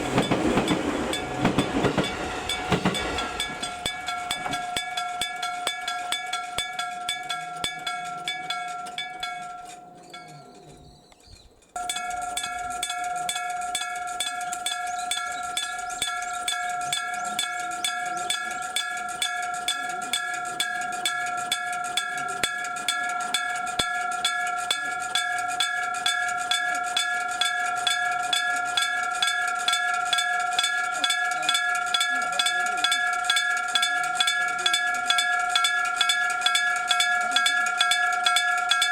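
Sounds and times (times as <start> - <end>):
level crossing bell clanging: 0.0 - 11.0, 11.8 - 38.9.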